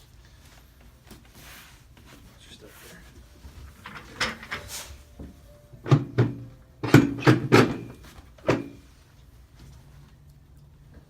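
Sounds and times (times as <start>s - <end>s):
drop table clunks and knocks: 5.8s - 8.8s.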